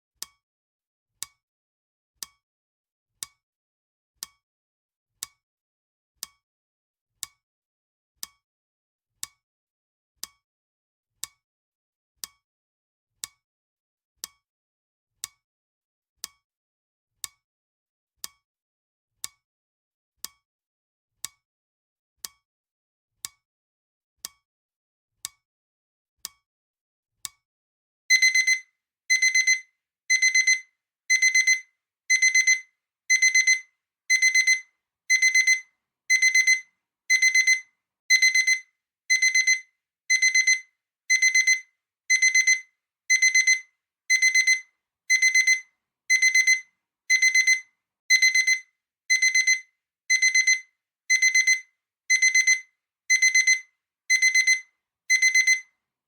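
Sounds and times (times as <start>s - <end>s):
clock ticking: 28.1s - 55.6s
high-pitched electronic alarm beeping: 28.1s - 55.6s.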